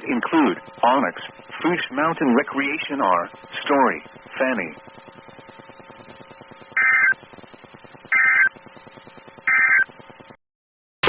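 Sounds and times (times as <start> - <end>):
faint background hum: 0.0 - 10.4
warbling digital tone bursts: 3.9 - 10.2.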